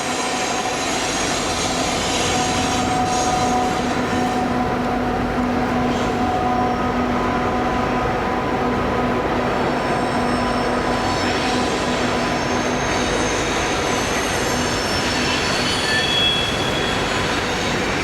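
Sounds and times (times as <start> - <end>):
high-pitched wheel squeals: 0.0 - 5.0, 9.7 - 18.0
train wheels rumbling on rail: 0.0 - 18.0.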